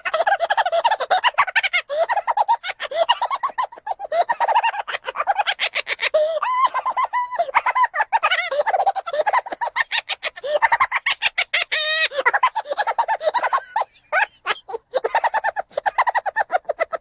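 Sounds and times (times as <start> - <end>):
squeaky cartoon voices giggling: 0.0 - 17.0.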